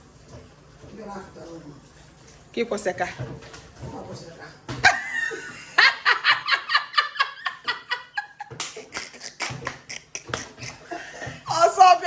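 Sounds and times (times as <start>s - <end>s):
person laughing: 4.9s - 11.2s.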